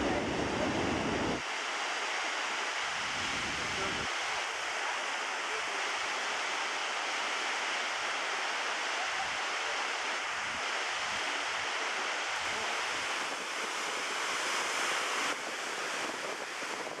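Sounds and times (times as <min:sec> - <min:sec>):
waterfall and rapids rushing: 0:00.0 - 0:17.0.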